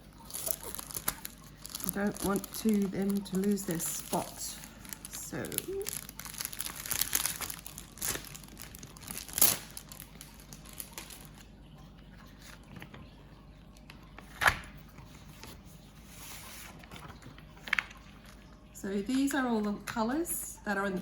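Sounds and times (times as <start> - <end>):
packaging crinkling and rustling: 0.1 - 11.5, 16.4 - 18.5.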